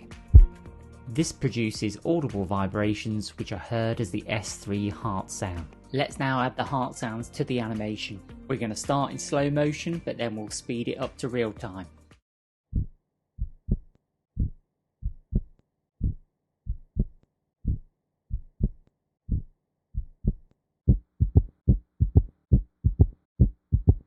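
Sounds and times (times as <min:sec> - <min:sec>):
heartbeat gallop thuds: 0:00.3 - 0:00.6, 0:12.7 - 0:24.0.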